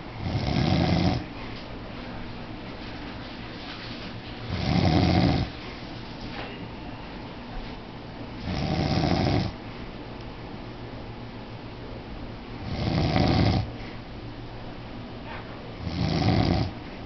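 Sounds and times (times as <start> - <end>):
man snoring: 0.2 - 1.2, 4.5 - 5.5, 8.4 - 9.6, 12.6 - 13.7, 15.8 - 16.7.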